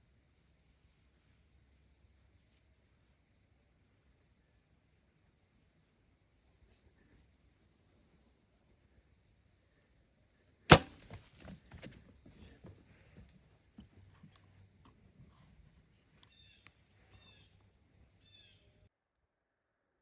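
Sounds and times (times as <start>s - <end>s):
loud sharp gunshot: 10.7s - 11.1s.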